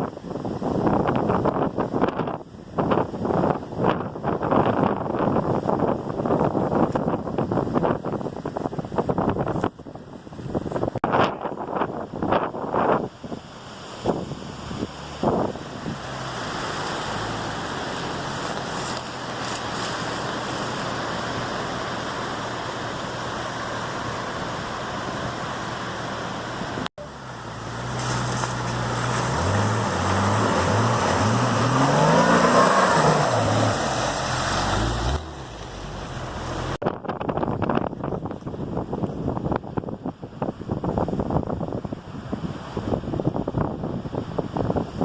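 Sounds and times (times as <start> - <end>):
wind buffeting microphone: 0.0 - 19.4, 27.8 - 45.0
vehicle engine revving: 27.0 - 36.8.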